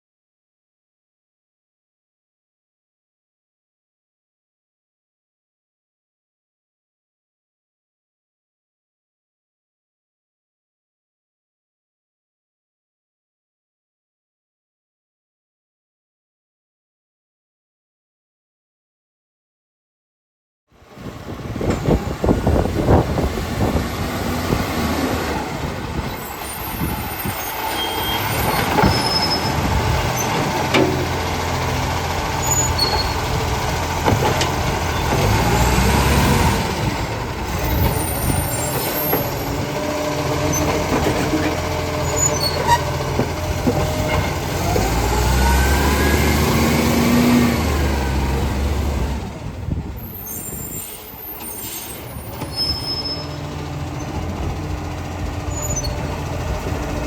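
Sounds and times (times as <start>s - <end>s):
diesel engine running: 20.8s - 57.0s
air brake hisses: 50.2s - 52.9s.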